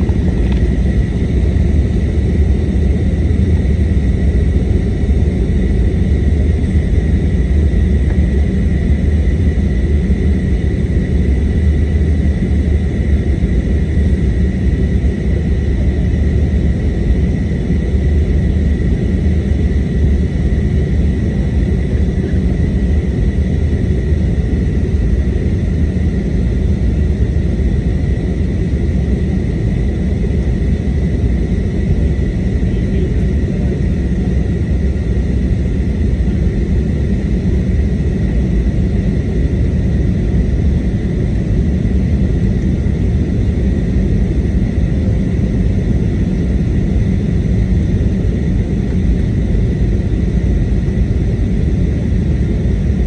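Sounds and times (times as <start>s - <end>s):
airplane cabin engine rumble: 0.0s - 53.0s
faint high whine: 27.6s - 38.5s.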